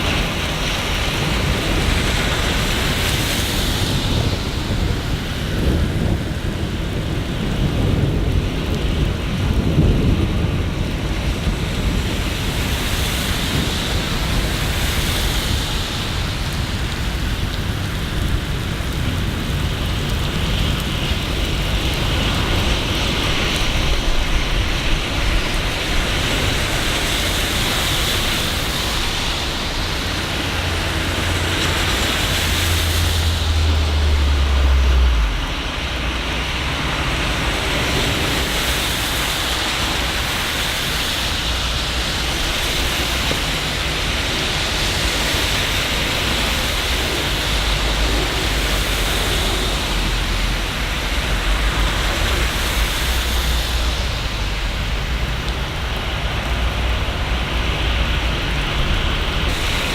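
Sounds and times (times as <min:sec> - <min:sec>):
heavy rain hissing: 0:00.0 - 0:59.9
low rumble: 0:28.5 - 0:37.9.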